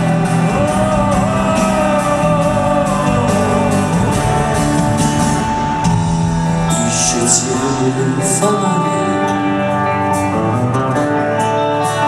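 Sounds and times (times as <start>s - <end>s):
instrumental rock music: 0.0s - 12.0s.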